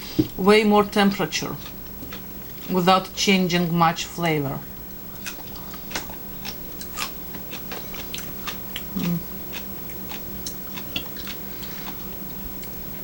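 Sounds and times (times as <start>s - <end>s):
steady low hum: 0.0s - 13.0s
chewing crunchy food: 1.3s - 2.8s, 5.1s - 13.0s
person humming: 8.9s - 9.4s.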